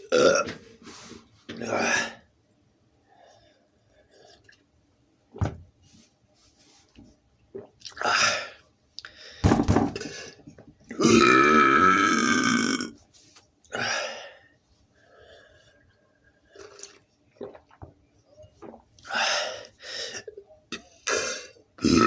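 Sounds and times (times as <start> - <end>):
man burping loudly: 0.0 - 0.6, 10.9 - 13.0, 21.1 - 22.0.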